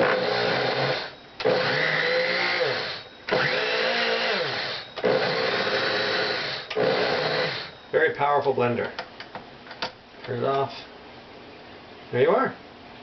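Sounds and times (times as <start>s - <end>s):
blender motor pulsing: 0.0s - 7.8s.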